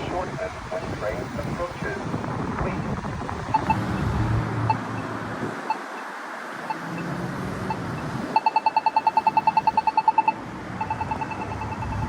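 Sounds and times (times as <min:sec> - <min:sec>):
low traffic noise: 0:00.0 - 0:12.0
pedestrian signal rapid ticking: 0:03.4 - 0:12.0
pedestrian signal slow locator tick: 0:03.5 - 0:12.0.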